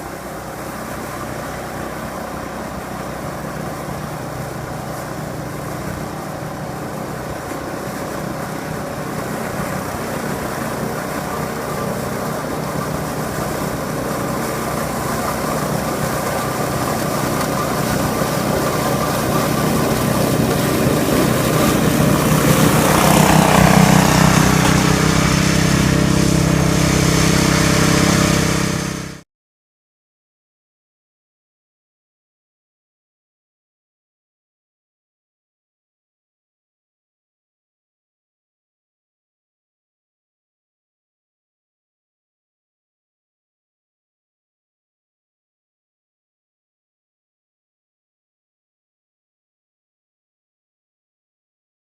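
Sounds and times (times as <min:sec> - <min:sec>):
snowblower engine running: 0:00.0 - 0:29.2
rush of noise: 0:07.2 - 0:29.2.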